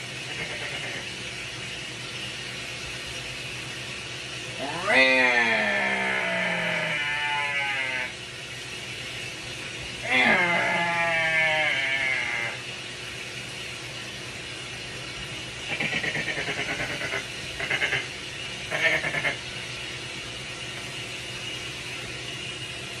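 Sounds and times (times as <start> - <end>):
animal drawn-out call: 0.3 - 1.1, 4.6 - 8.2, 10.0 - 12.6, 15.7 - 18.1, 18.7 - 19.5
rapid pulsed animal calls: 15.6 - 18.1, 18.7 - 19.4.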